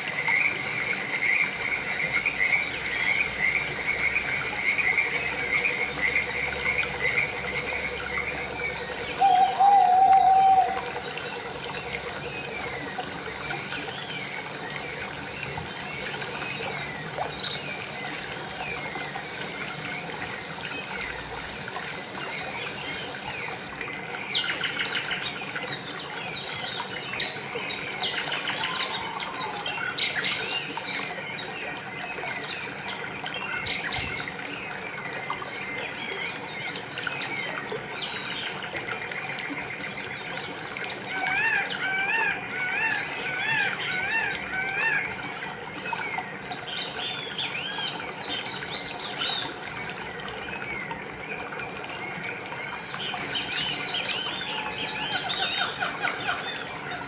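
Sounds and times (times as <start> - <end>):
birds chirping and singing: 1.3 - 19.5.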